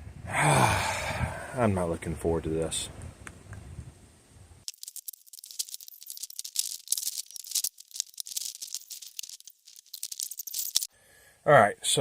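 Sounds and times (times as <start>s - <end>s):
small hard objects clicking: 4.7s - 10.9s.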